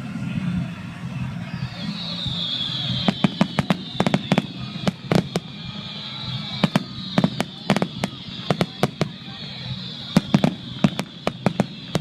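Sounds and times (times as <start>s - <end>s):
high whistle falling in pitch: 1.4s - 12.0s
firework cracks: 2.4s - 12.0s.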